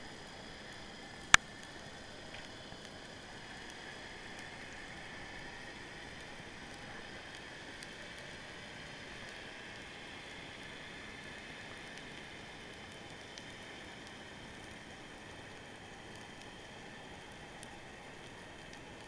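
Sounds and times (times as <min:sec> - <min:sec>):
faint clicks and crackles: 0:00.0 - 0:19.0
steady underwater hiss: 0:00.0 - 0:19.0.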